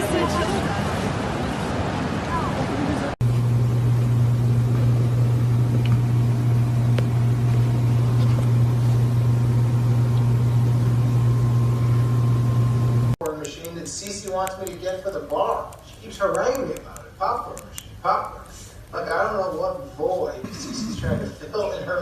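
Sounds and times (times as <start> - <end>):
low mechanical hum: 2.8 - 22.0
faint ticks: 13.2 - 19.1.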